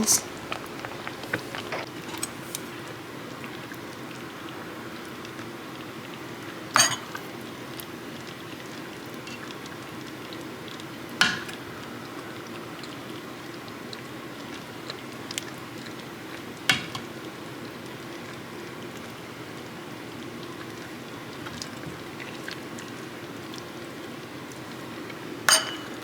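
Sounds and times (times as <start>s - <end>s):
ladle clinking against pot and bowls: 6.8s - 7.2s, 25.5s - 26.0s.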